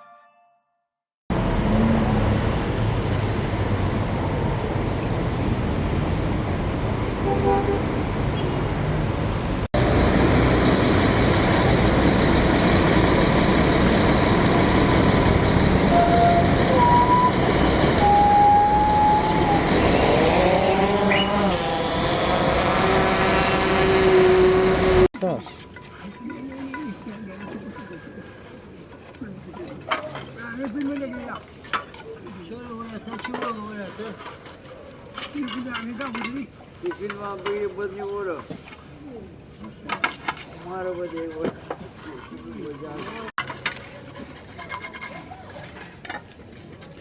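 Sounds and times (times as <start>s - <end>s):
road traffic noise: 1.3s - 25.1s.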